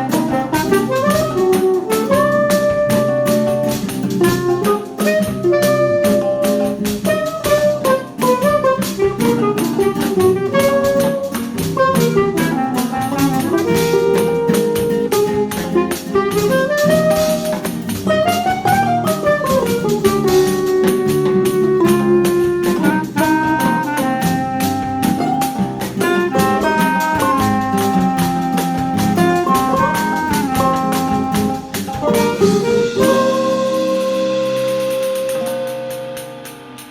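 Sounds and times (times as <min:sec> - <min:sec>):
clarinet melody: 0:00.0 - 0:36.9
drum kit: 0:00.0 - 0:36.9
guitars: 0:00.0 - 0:36.9
mandolin: 0:00.0 - 0:36.9
pandeiro: 0:00.0 - 0:36.9
tuba: 0:00.0 - 0:36.9.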